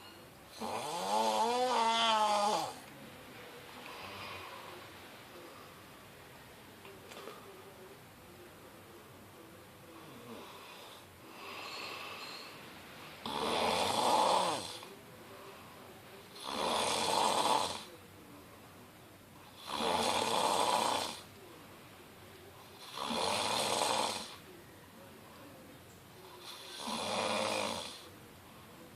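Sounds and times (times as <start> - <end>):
man snoring: 0.6 - 2.8, 13.2 - 14.9, 16.4 - 17.9, 19.6 - 21.3, 22.8 - 24.4, 26.4 - 28.1.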